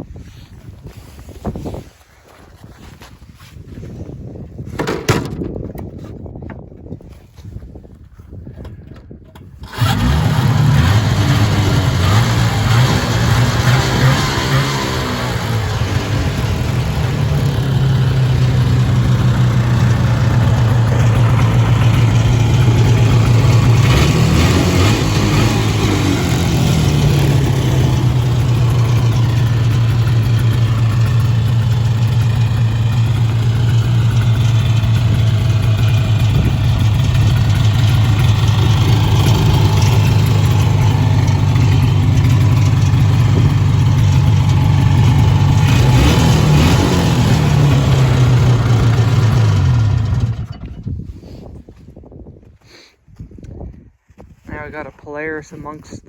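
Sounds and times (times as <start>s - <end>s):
snowmobile engine revving: 9.6s - 50.5s
snowmobile engine idling: 9.6s - 51.5s.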